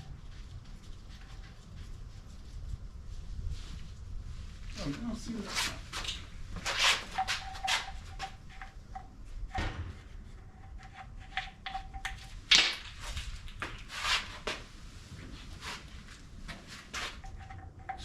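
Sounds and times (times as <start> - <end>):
tools and parts knocking: 7.1 - 12.9, 17.2 - 18.0.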